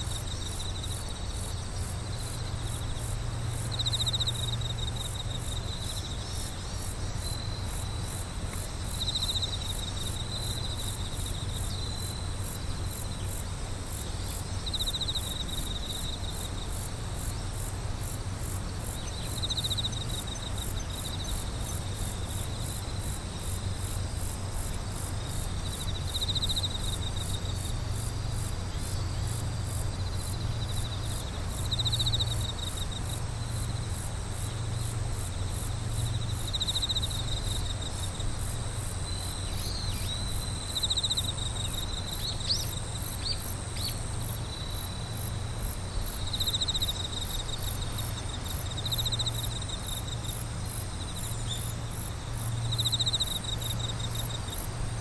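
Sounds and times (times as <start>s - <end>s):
high pulsing insect call: 0.0s - 55.0s
lower insect trill: 0.0s - 55.0s.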